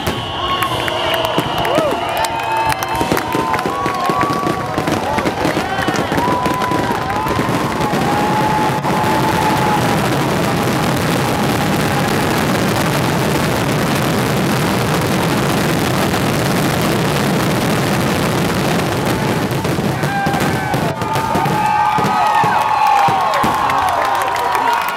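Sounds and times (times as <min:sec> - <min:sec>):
faint firework whistles: 0:00.0 - 0:02.2
fireworks explosions rumbling: 0:00.0 - 0:24.1.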